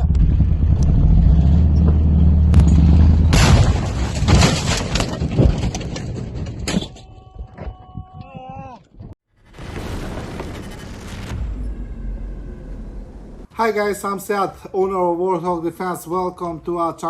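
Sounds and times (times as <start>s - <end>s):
harsh rushing noise with crackles: 9.4s - 11.8s.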